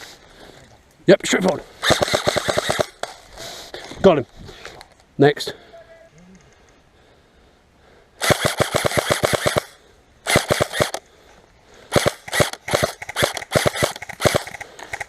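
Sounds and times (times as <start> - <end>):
airsoft rifle firing: 1.8 - 3.2, 8.2 - 11.0, 11.9 - 15.0.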